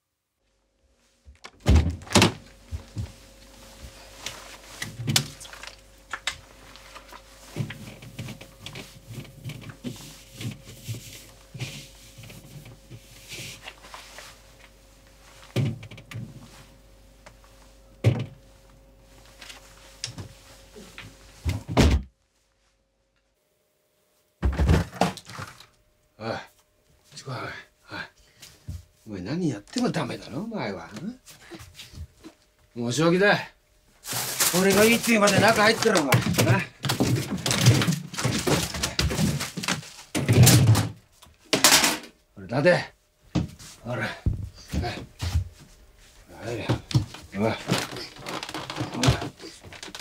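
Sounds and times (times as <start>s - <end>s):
refrigerator hum: 0.1s - 50.0s
refrigerator door opening and shutting: 1.4s - 2.5s, 4.8s - 5.7s, 21.4s - 22.1s, 34.6s - 42.1s
items knocking on shelves: 1.6s - 3.2s, 24.4s - 25.6s, 34.1s - 42.1s.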